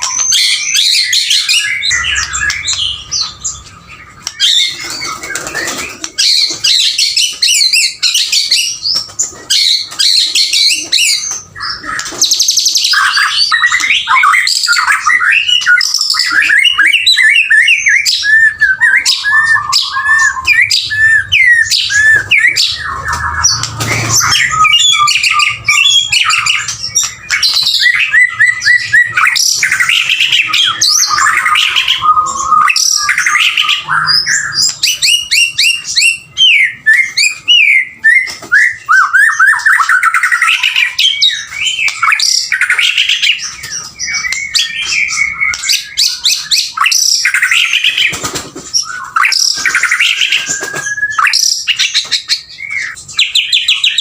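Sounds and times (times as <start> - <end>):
bird singing varied whistles: 48.8 - 54.0.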